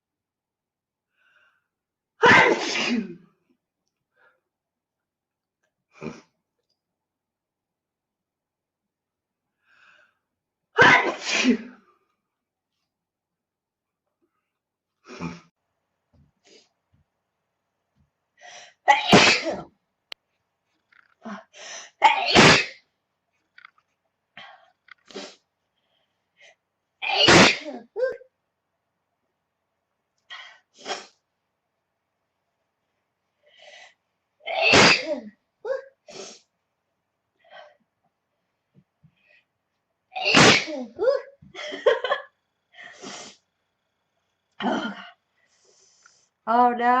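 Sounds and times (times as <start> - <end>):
woman sneezing: 2.2 - 3.2, 10.8 - 11.8, 22.0 - 22.8, 27.0 - 28.2, 34.5 - 35.9, 40.2 - 41.3
breathy sounds: 15.0 - 15.5.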